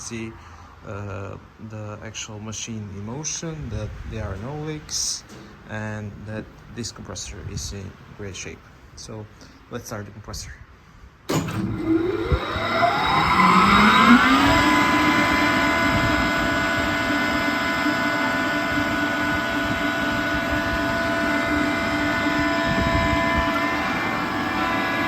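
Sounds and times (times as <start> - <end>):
air compressor whining and humming: 3.8 - 8.2, 11.3 - 25.0.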